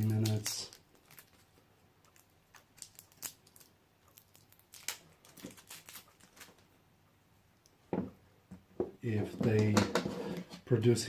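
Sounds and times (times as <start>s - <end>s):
small objects clicking and crinkling: 0.0s - 6.7s.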